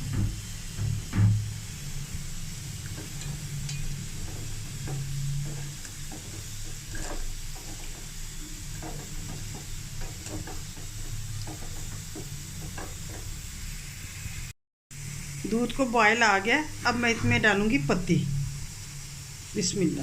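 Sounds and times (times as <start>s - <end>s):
milk simmering and bubbling: 0.0s - 13.6s
steady low hum: 0.0s - 20.0s.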